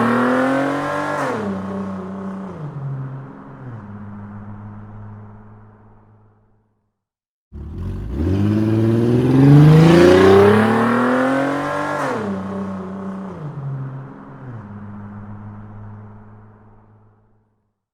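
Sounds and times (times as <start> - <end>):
sports car engine revving: 7.6 - 13.4.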